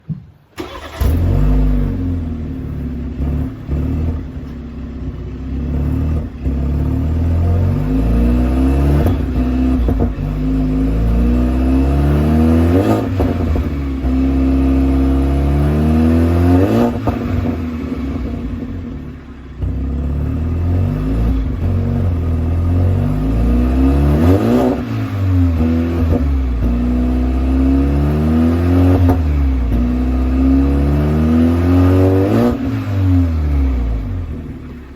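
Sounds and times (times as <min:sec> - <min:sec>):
exhaust pops: 0:00.0 - 0:10.9
car engine starting and revving: 0:00.6 - 0:34.9.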